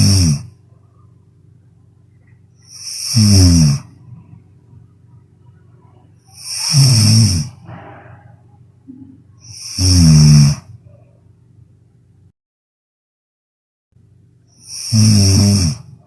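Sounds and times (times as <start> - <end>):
person snoring: 0.0 - 0.6, 2.6 - 4.0, 6.2 - 7.8, 9.4 - 10.7, 14.6 - 16.0
soft breath: 5.8 - 9.6.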